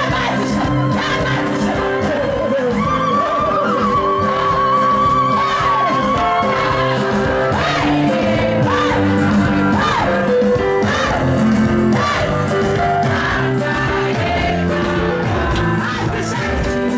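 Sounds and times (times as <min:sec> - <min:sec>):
loud music with singing: 0:00.0 - 0:16.9.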